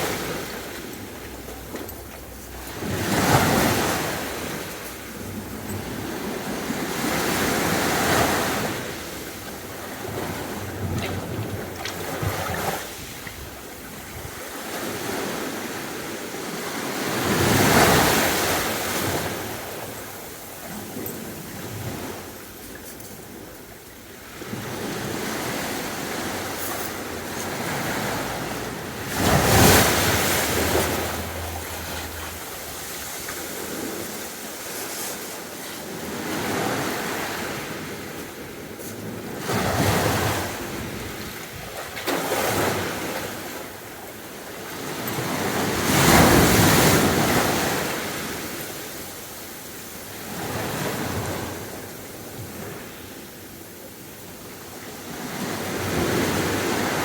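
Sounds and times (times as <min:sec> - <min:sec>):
sea waves breaking on beach: 0:00.0 - 0:57.0.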